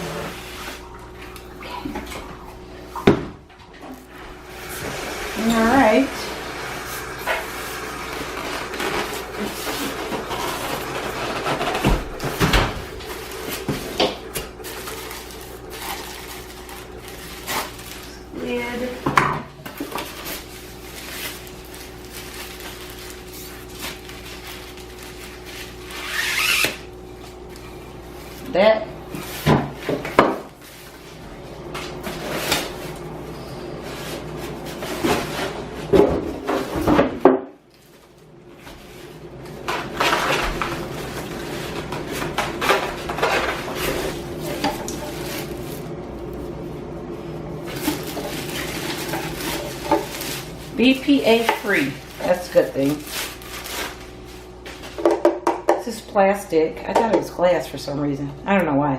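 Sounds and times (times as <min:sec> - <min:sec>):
low background hum: 0:00.0 - 0:58.9
packaging rustling: 0:19.8 - 0:26.6, 0:39.6 - 0:46.0, 0:47.7 - 0:55.0.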